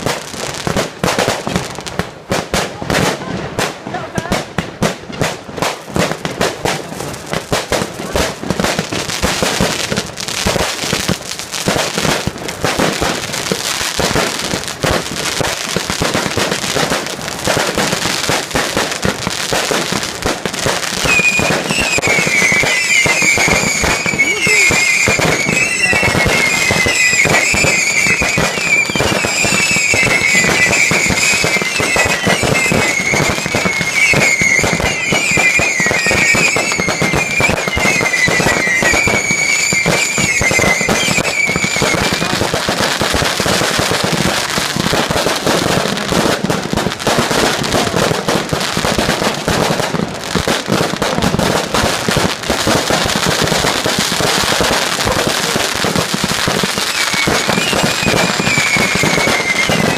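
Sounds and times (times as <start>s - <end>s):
fireworks bangs and crackling: 0.0s - 59.9s
high wavering firework whistles: 21.0s - 42.5s, 56.7s - 59.9s.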